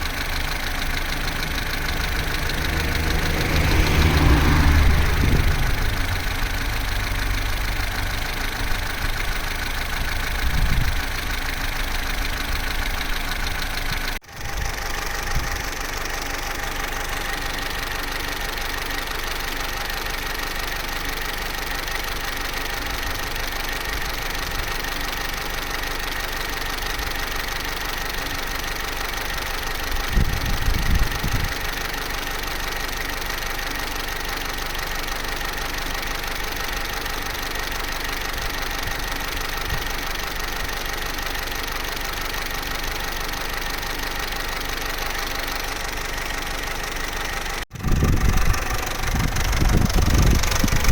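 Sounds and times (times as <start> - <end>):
low rumble: 0.0 - 15.7, 47.6 - 50.9
car engine idling with chain rattle: 0.0 - 50.9.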